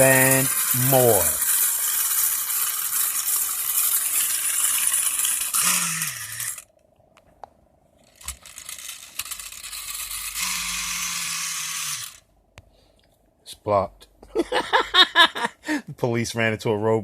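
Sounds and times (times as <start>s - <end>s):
toy click: 0.0s - 6.6s, 8.2s - 12.2s
wind-up toy metallic whirring rattle: 0.0s - 6.7s, 8.0s - 12.2s.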